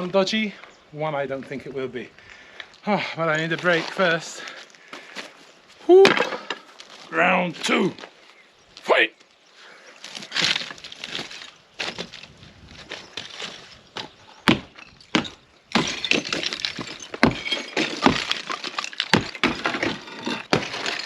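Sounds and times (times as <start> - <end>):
debris breaking and falling: 14.4 - 21.0.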